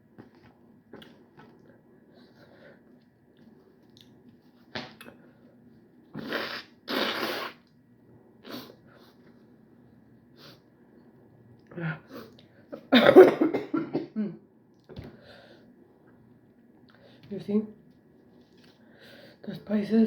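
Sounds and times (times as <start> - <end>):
person blowing nose: 6.2 - 7.6
person sniffing: 6.2 - 7.6.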